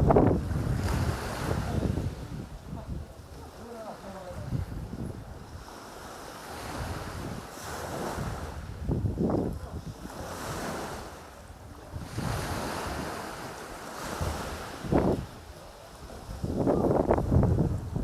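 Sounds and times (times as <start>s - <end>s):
wind hitting microphone: 0.0s - 5.8s, 6.5s - 18.0s
sea waves washing up beach: 0.0s - 18.0s.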